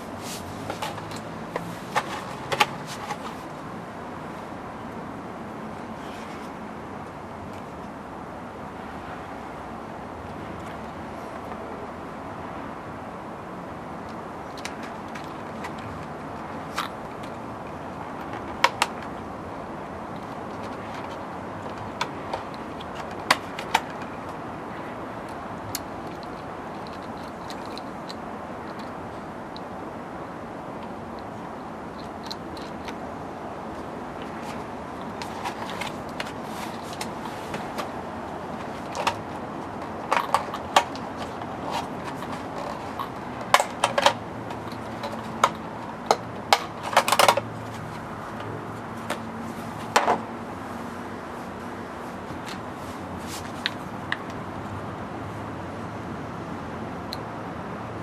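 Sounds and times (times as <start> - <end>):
steady background hiss: 0.0 - 58.0
small hard parts clicking: 25.3 - 29.7, 31.9 - 33.0, 34.2 - 47.5.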